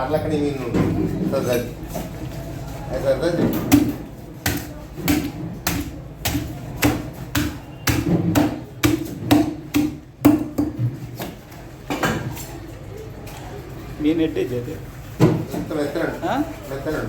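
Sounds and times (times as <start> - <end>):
knife chopping fish on wood: 3.5 - 11.4.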